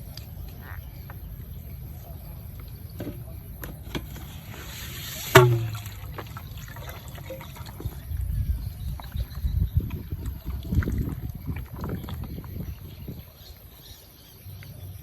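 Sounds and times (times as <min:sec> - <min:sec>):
water splash: 0:04.2 - 0:08.2
water rushing: 0:04.4 - 0:08.1.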